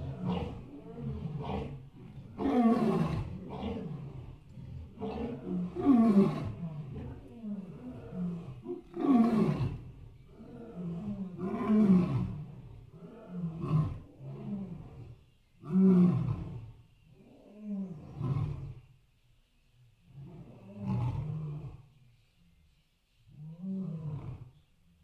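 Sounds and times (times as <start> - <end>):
lion roaring: 0.0 - 16.7, 20.1 - 21.8.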